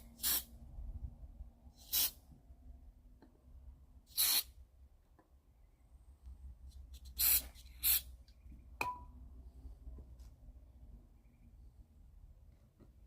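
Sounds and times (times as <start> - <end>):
aerosol spray hissing: 0.0 - 0.5, 1.8 - 2.2, 4.1 - 4.5, 7.2 - 8.1.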